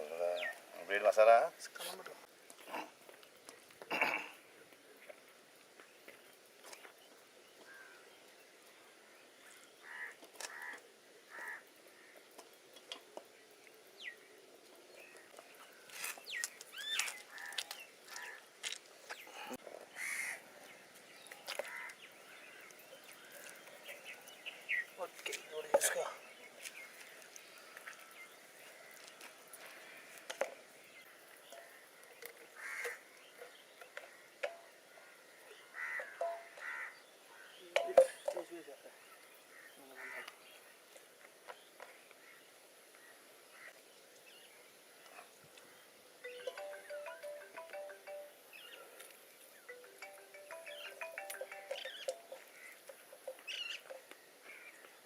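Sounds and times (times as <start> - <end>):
crow cawing: 9.8 - 12.2, 20.0 - 20.4, 21.6 - 22.0, 32.6 - 33.0, 35.7 - 37.5.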